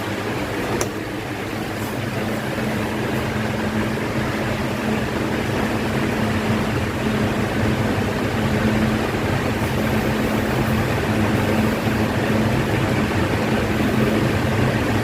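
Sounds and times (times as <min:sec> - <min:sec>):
electric fan running: 0:00.0 - 0:15.0.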